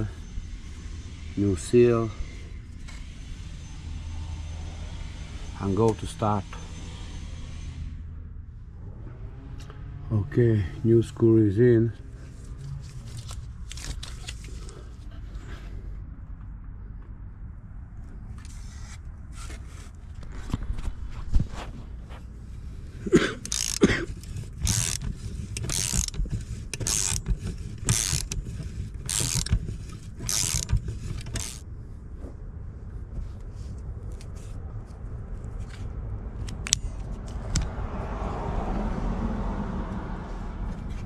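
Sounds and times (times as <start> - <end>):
hand ratchet clicking: 23.4 - 31.6.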